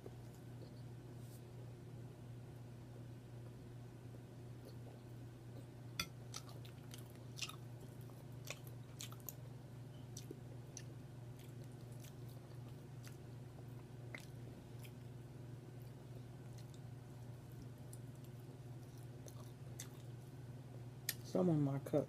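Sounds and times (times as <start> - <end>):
steady low hum: 0.0 - 22.0
person chewing food: 4.6 - 20.4.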